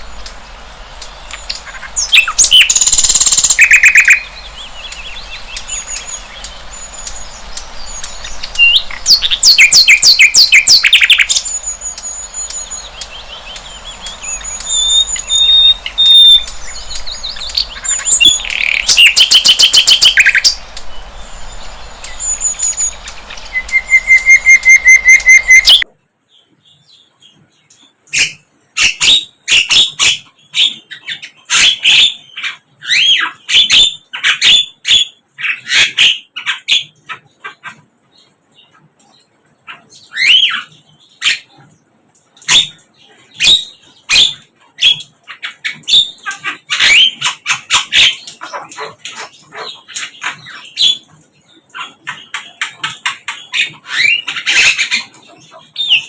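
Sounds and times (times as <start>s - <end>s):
background hiss: 0.0s - 33.7s
bird singing trills and chirps: 0.2s - 37.5s.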